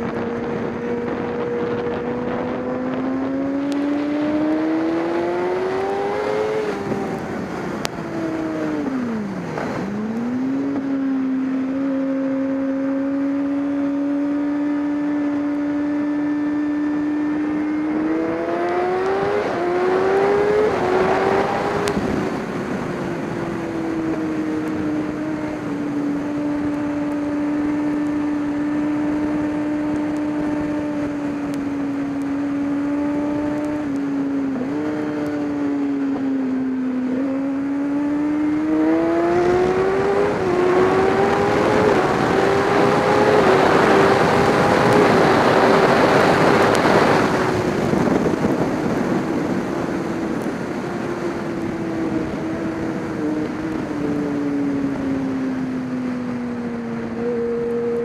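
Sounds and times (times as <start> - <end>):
racing engine revving: 0.0 - 22.8, 37.0 - 56.0.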